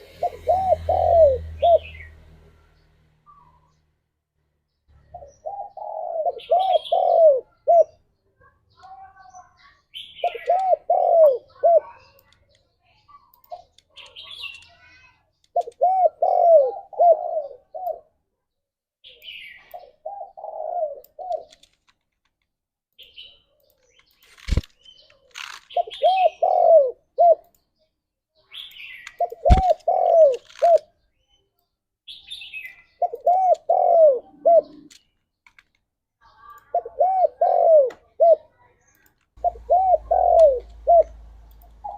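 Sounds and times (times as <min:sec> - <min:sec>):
dove cooing: 0:00.0 - 0:02.1, 0:05.1 - 0:08.0, 0:10.2 - 0:12.2, 0:15.6 - 0:18.1, 0:19.8 - 0:21.6, 0:25.4 - 0:27.4, 0:29.2 - 0:30.9, 0:33.0 - 0:35.0, 0:36.7 - 0:38.5, 0:39.4 - 0:41.9
small birds chirping: 0:00.0 - 0:18.2, 0:19.0 - 0:22.2, 0:22.9 - 0:41.9
sharp clicks: 0:12.0 - 0:12.7, 0:13.3 - 0:14.8, 0:21.3 - 0:25.8, 0:28.7 - 0:30.9, 0:39.0 - 0:41.9.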